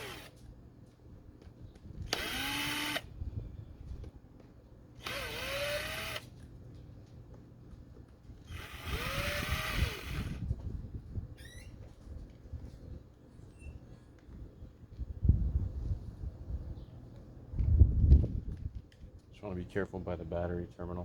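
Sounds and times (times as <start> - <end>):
cordless drill whine: 0.0 - 0.4, 2.1 - 3.1, 5.0 - 6.3, 8.4 - 10.5.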